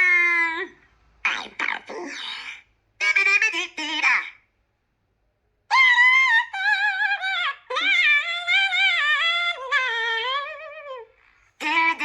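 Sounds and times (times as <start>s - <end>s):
high warbling singing voice: 5.7s - 12.0s.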